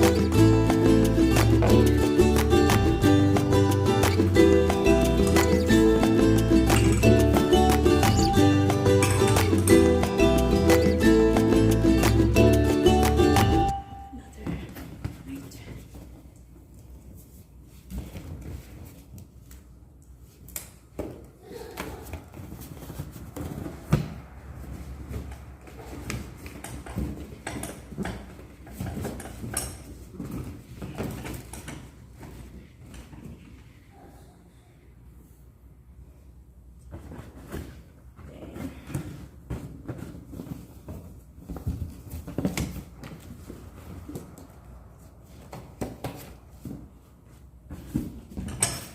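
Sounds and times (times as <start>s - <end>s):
objects knocking: 6.6s - 9.8s.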